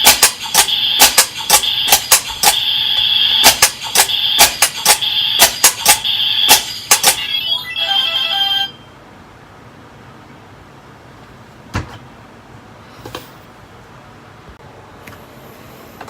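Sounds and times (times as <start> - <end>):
toy electronic sound effects: 0.0 - 8.8.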